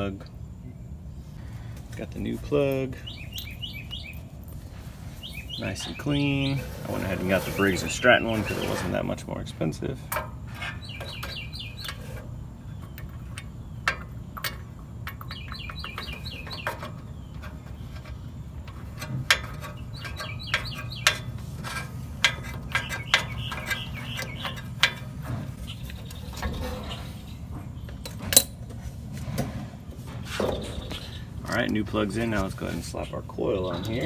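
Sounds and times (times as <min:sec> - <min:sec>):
tools knocking: 0:10.1 - 0:26.7.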